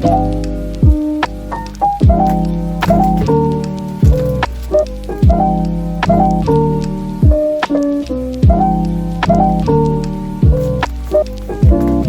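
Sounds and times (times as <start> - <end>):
keyboard chords over a beat: 0.0 - 12.0
deep kick drum: 0.8 - 1.2, 2.0 - 2.5, 3.1 - 4.5, 5.2 - 7.6, 8.4 - 9.8, 10.4 - 10.8, 11.6 - 12.0.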